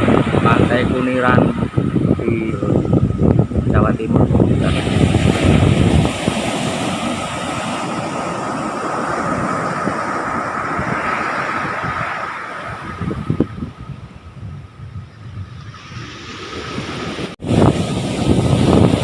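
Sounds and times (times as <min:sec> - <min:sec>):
ocean surf washing in: 0:00.0 - 0:19.0
wind buffeting microphone: 0:00.0 - 0:19.0.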